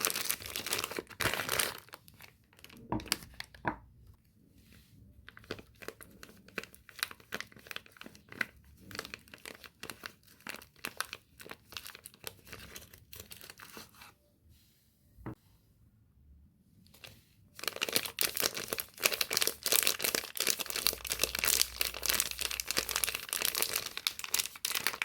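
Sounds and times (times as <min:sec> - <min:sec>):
packaging crinkling and tearing: 0:00.0 - 0:03.6, 0:05.3 - 0:14.0, 0:17.6 - 0:25.0.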